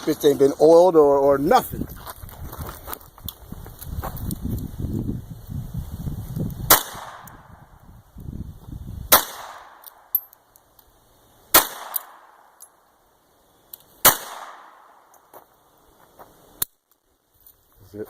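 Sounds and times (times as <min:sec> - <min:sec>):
sharp crack: 0:06.6 - 0:07.5, 0:09.1 - 0:10.6, 0:11.5 - 0:12.8, 0:13.7 - 0:15.2
echoing handgun shots: 0:06.7 - 0:07.5, 0:09.1 - 0:10.2, 0:11.5 - 0:12.6, 0:14.0 - 0:15.1.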